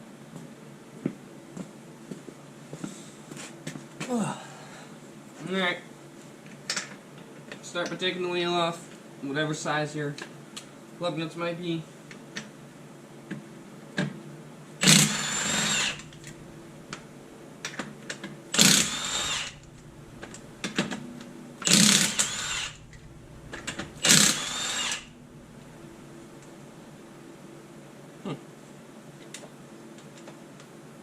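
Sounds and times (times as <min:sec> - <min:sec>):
impact wrench loosening lug nuts: 0:14.8 - 0:17.0, 0:18.6 - 0:21.0, 0:21.6 - 0:26.0.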